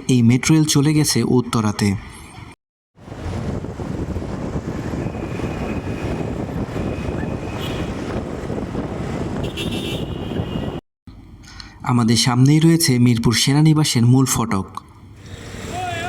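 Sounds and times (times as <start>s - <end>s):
road and traffic noise: 0.0s - 11.9s, 13.4s - 16.0s
wind buffeting microphone: 3.0s - 10.8s.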